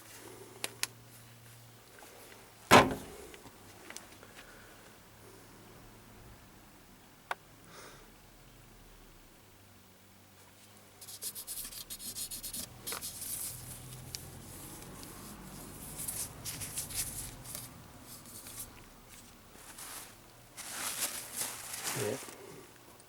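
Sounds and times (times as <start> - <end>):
rubbing and scraping with clicks: 11.0 - 19.3.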